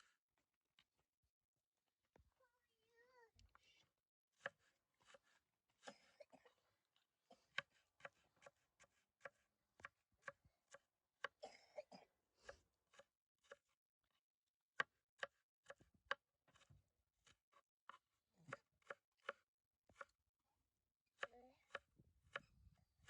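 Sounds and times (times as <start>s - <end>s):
knife chopping on cutting board: 4.4s - 6.0s, 7.5s - 11.4s, 12.9s - 13.7s, 14.8s - 20.1s, 21.2s - 22.5s.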